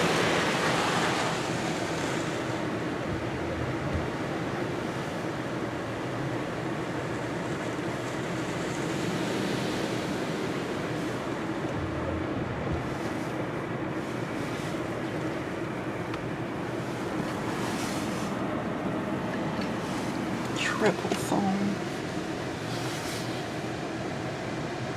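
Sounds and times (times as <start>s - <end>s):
machinery hum: 1.2s - 7.2s, 9.2s - 22.6s.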